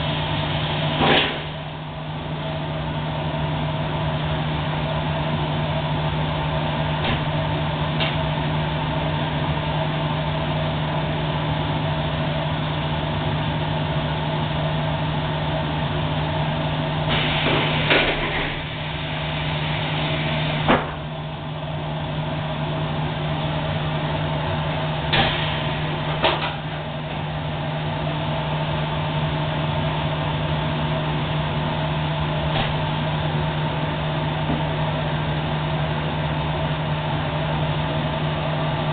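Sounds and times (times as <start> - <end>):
welding machine humming: 12.5 - 38.1.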